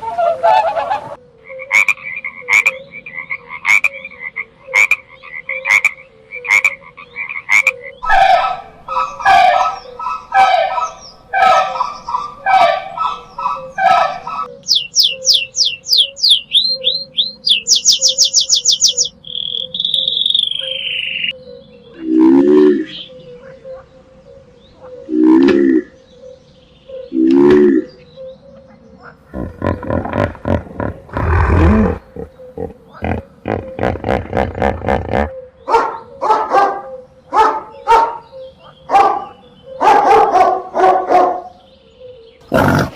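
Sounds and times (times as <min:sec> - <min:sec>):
dog barking: 0:08.1 - 0:14.5, 0:35.7 - 0:41.5
large animal calling: 0:29.2 - 0:35.4, 0:42.4 - 0:42.9.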